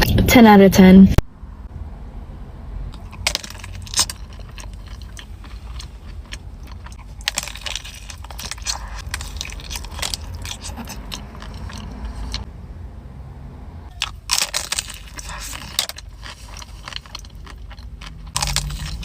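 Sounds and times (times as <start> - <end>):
crunchy chewing: 3.0 - 12.5, 13.9 - 19.0.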